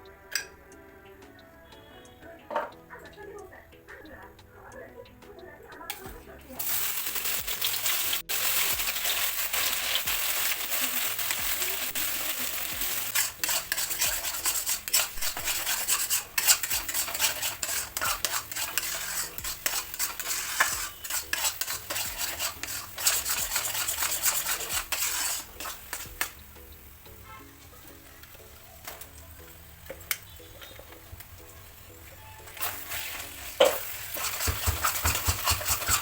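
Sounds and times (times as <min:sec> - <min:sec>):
food sizzling in a pan: 0:05.9 - 0:36.0
spatula scraping a pan: 0:06.7 - 0:26.5, 0:32.5 - 0:36.0.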